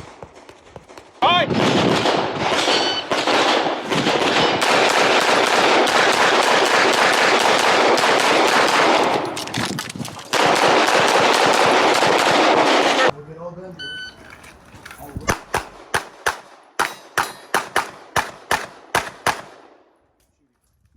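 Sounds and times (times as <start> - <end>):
rapid gunshots: 0.0 - 9.3, 10.3 - 13.1, 15.3 - 19.7.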